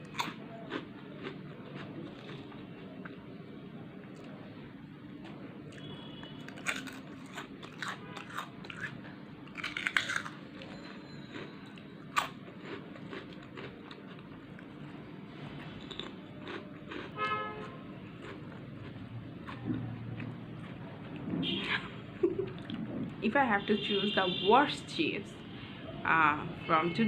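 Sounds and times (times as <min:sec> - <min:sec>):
crisp chips crunching: 0:00.0 - 0:03.0, 0:05.7 - 0:14.7, 0:15.8 - 0:17.2
soft chewing: 0:00.0 - 0:03.3, 0:04.0 - 0:04.5, 0:05.2 - 0:15.0, 0:15.6 - 0:23.2.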